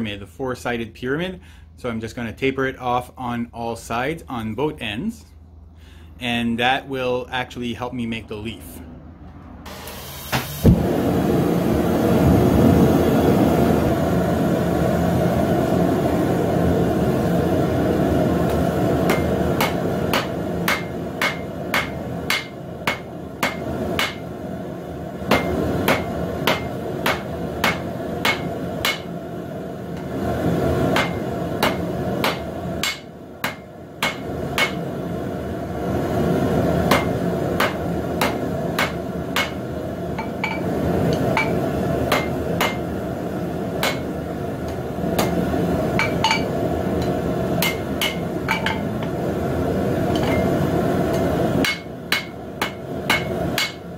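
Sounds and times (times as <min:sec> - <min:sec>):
low rushing noise: 0:10.6 - 0:19.6
hammer blows on anvil: 0:18.5 - 0:24.3, 0:25.3 - 0:29.1, 0:30.9 - 0:34.8, 0:36.9 - 0:39.6, 0:40.2 - 0:42.9, 0:43.8 - 0:44.1, 0:45.2 - 0:49.1, 0:51.1 - 0:53.8.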